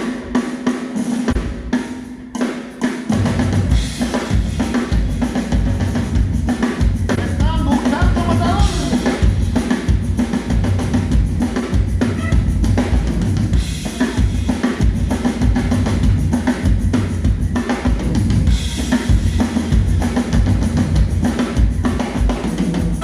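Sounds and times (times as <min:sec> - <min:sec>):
bass drum and snare beat: 0:00.0 - 0:23.0
live band playing: 0:00.0 - 0:23.0.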